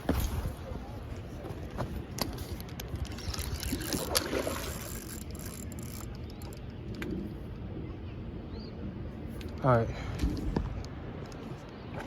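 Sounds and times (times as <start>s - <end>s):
water sloshing and splashing: 0.0s - 6.4s.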